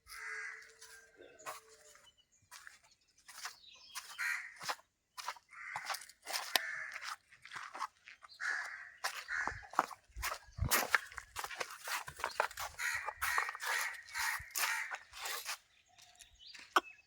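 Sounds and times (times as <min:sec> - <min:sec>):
crows cawing: 0:00.0 - 0:02.0, 0:04.0 - 0:04.8, 0:05.4 - 0:07.6, 0:08.4 - 0:10.0, 0:12.6 - 0:15.2.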